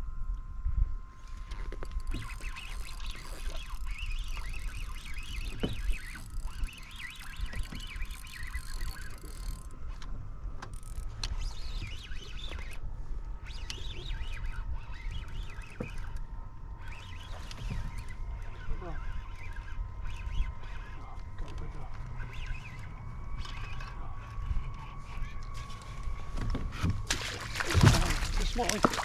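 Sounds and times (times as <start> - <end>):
faint steady high whine: 0.0 - 29.0
low wind rumble: 0.0 - 29.0
birds chirping and warbling: 2.0 - 9.7, 13.4 - 26.8.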